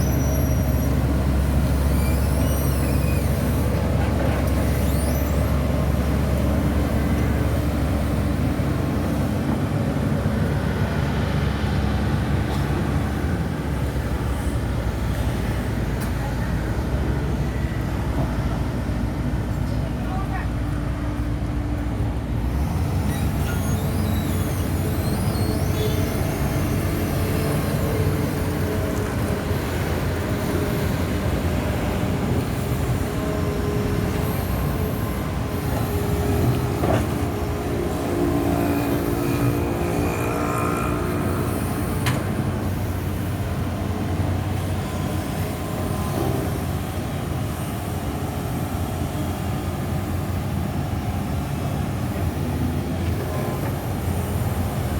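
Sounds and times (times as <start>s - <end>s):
short high squeals: 0.0s - 3.7s, 4.6s - 5.6s, 22.9s - 27.9s
diesel machinery engine drone: 0.0s - 54.9s.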